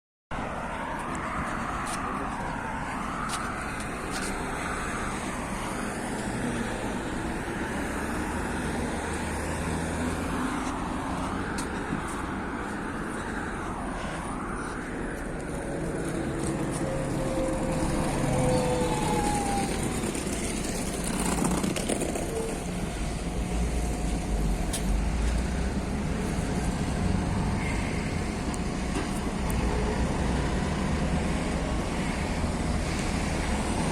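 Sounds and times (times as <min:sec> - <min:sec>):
bus engine and road noise: 0:00.3 - 0:33.9
rising and falling whine: 0:00.4 - 0:31.6
high squeals: 0:16.8 - 0:20.5.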